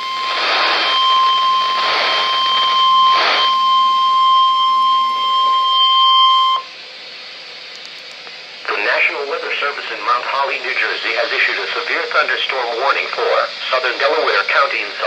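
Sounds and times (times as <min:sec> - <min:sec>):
radio alarm steady tone: 0:00.0 - 0:06.8, 0:08.6 - 0:15.0
faint radio hiss: 0:00.1 - 0:00.9, 0:07.0 - 0:15.0.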